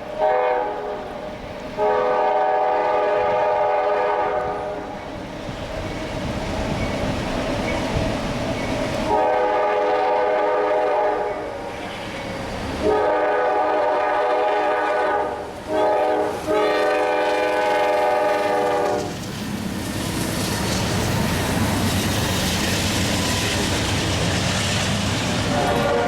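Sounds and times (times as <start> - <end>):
train rumble: 0.0 - 26.0
locomotive air horn blasts: 0.1 - 1.2, 1.8 - 5.0, 9.1 - 11.5, 12.8 - 19.1, 25.4 - 26.0.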